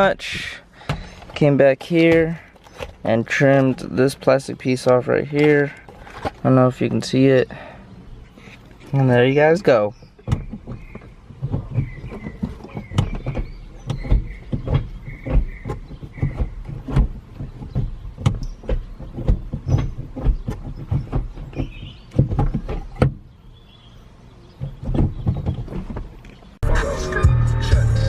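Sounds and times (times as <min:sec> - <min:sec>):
plastic trim squeaks: 0:08.2 - 0:23.2
clicks and knocks from shifter: 0:08.3 - 0:23.3, 0:24.5 - 0:26.6.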